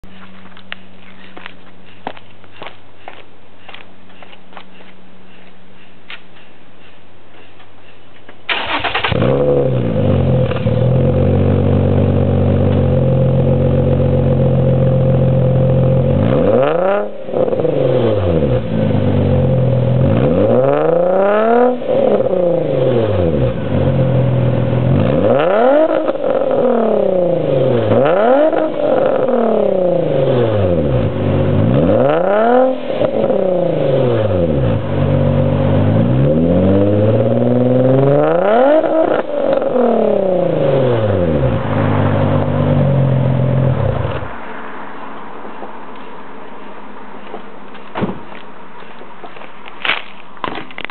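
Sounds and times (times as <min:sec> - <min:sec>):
car engine revving in blips: 0:08.5 - 0:44.4
car engine starting and idling: 0:08.5 - 0:46.0.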